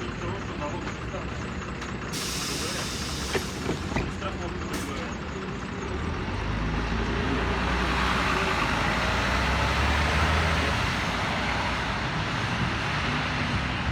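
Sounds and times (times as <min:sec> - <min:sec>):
bus engine and road noise: 0:00.0 - 0:13.9.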